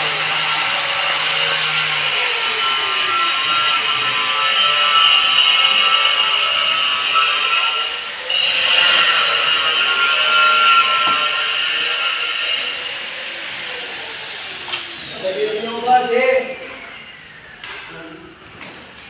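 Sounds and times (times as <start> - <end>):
power tool cutting wood: 0.0 - 17.2.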